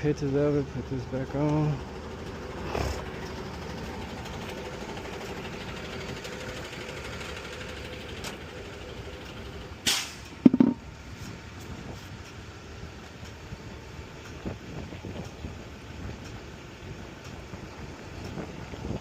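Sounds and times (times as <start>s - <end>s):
vehicle engine idling: 0.0s - 19.0s
short sharp hiss: 9.8s - 10.3s
clunk: 9.9s - 10.8s.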